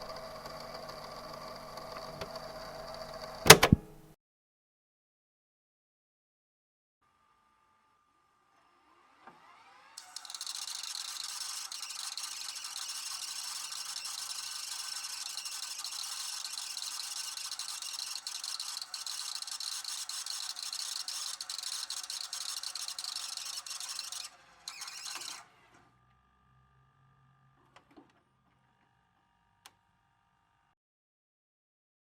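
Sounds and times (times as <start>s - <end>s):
video tape transport whirring: 0.0s - 4.0s, 9.2s - 26.0s.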